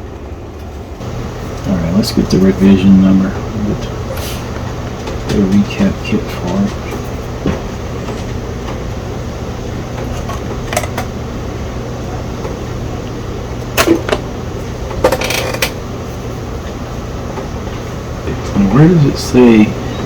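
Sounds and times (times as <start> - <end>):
low background hum: 0.0 - 20.0
parts clicking and knocking: 14.9 - 15.8.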